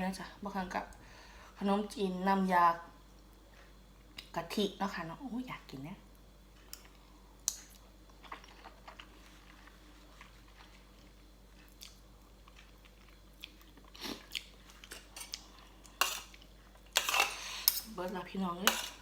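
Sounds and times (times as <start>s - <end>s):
crunches and clicks of chewing: 6.6s - 15.5s
person chewing food: 6.6s - 17.7s.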